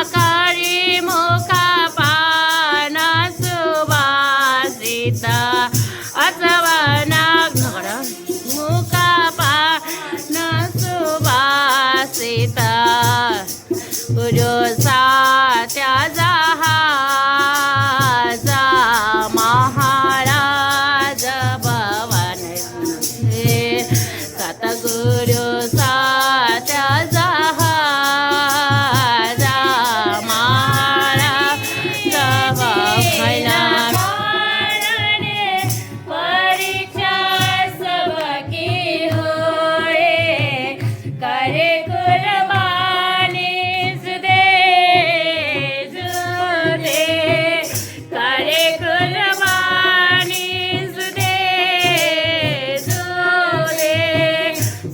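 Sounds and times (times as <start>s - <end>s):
rapid high rattling percussion: 0.0s - 54.9s
person singing: 29.0s - 34.2s.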